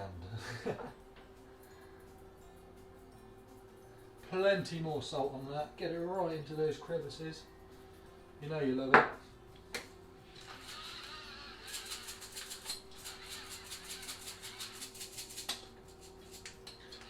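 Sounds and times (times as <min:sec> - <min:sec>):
electric salt grinder grinding: 0:10.2 - 0:17.0.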